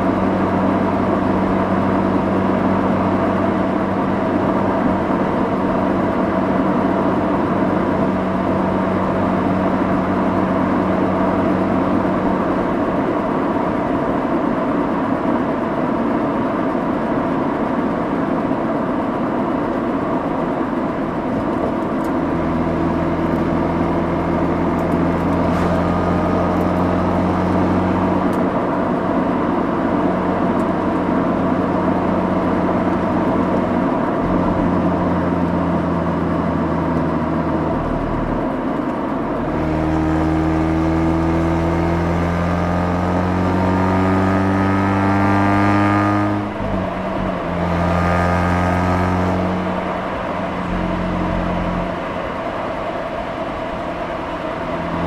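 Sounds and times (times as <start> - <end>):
car engine and exhaust: 0.0 - 55.0
tyre and road noise: 20.3 - 55.0.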